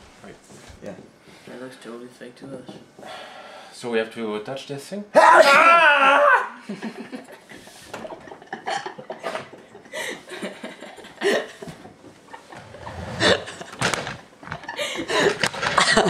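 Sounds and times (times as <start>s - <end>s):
loud vocal outburst: 5.2s - 6.6s
people laughing: 6.6s - 16.0s.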